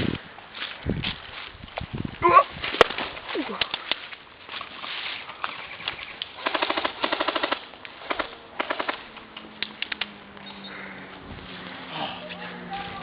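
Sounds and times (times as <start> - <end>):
airsoft guns firing: 6.4 - 9.1.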